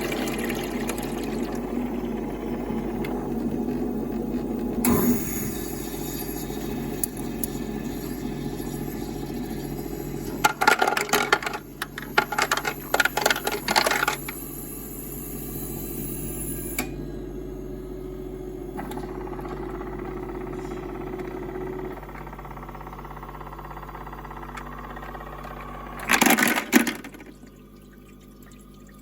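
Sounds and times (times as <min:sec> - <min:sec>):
ice machine humming: 0:00.0 - 0:29.0
ice cubes clattering into bin: 0:10.4 - 0:14.2, 0:26.0 - 0:27.4.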